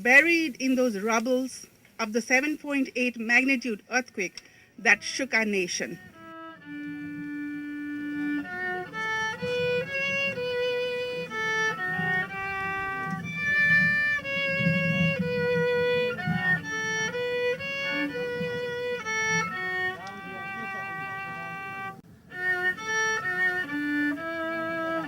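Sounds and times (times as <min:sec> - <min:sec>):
slow instrumental music: 0:05.9 - 0:25.0.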